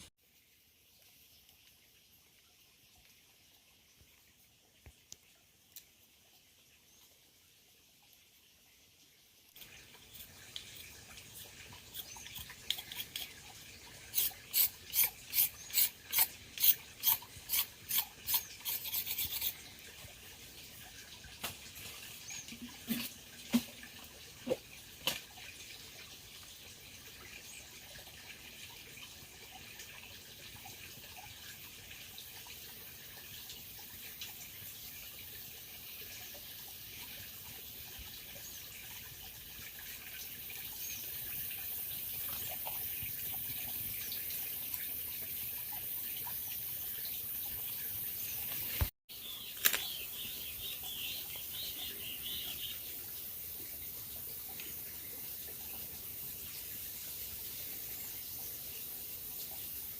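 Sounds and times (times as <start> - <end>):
rasping scraping strokes: 14.2 - 19.6.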